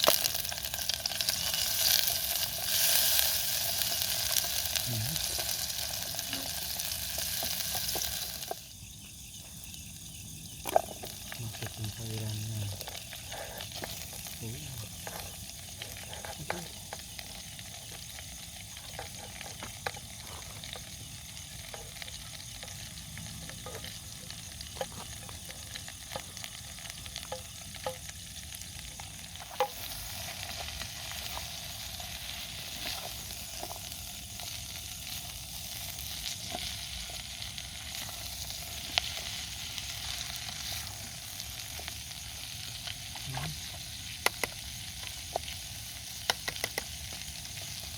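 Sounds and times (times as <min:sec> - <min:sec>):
food sizzling in a pan: 0:00.0 - 0:47.9
sharp clicks: 0:44.2 - 0:44.6, 0:46.2 - 0:46.9.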